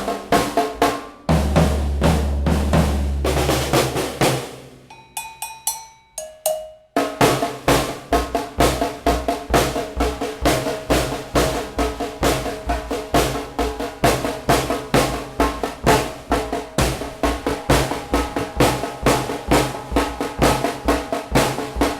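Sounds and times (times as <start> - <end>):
drum kit playing: 0.0 - 21.9.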